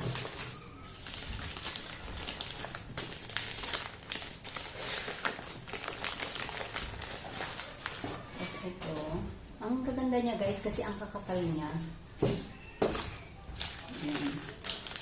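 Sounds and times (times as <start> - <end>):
plastic packaging crinkling: 0.0 - 9.1, 12.6 - 15.0.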